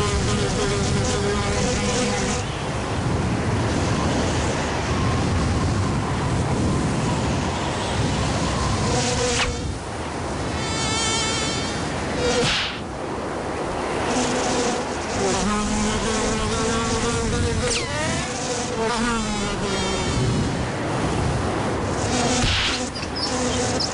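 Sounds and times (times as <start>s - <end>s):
wavering insect-like buzzing: 0.0s - 2.6s, 10.5s - 12.8s, 14.0s - 20.7s, 21.9s - 23.9s
rushing wind noise: 0.0s - 23.9s
short whoosh: 12.4s - 12.9s.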